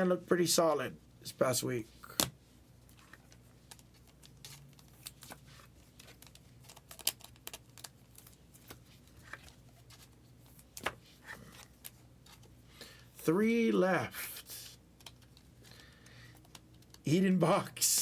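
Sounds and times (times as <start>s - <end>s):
trading cards clicking and rustling: 2.0s - 12.6s, 14.7s - 17.1s.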